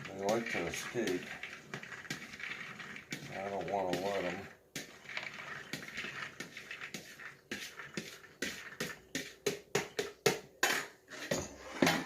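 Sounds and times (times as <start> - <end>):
spoon clinking and scraping pots: 0.0 - 12.0.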